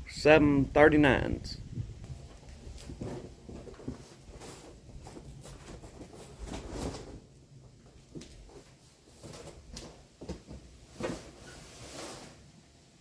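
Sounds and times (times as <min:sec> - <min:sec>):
cardboard boxes rustling: 0:02.2 - 0:12.4.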